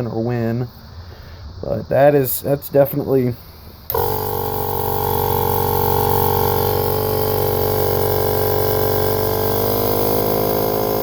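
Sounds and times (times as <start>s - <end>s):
air compressor motor humming: 3.9s - 11.0s.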